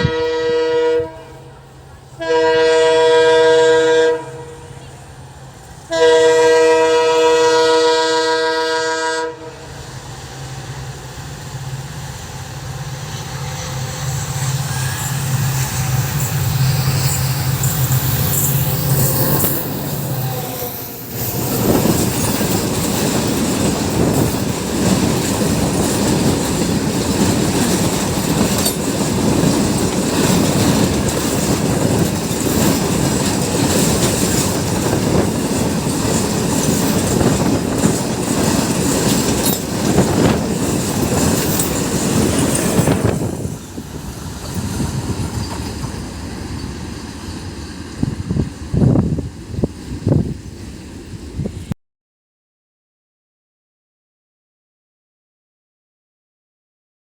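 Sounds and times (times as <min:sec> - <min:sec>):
locomotive horn: 0:00.0 - 0:04.9, 0:05.9 - 0:09.7
locomotive engine hum: 0:00.0 - 0:51.7
freight wagons clattering over rails: 0:15.8 - 0:47.4.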